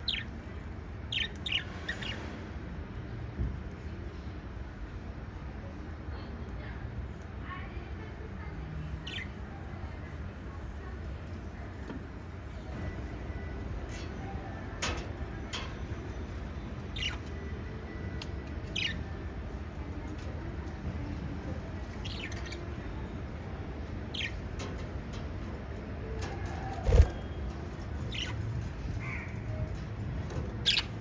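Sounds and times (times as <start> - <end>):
lovebirds chirping: 24.0 - 24.6, 26.0 - 29.8, 30.5 - 31.0.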